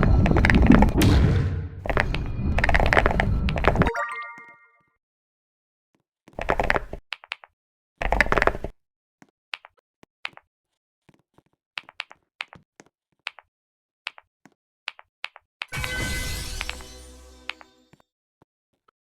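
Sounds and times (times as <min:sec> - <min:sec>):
loud thuds: 0:00.4 - 0:02.0.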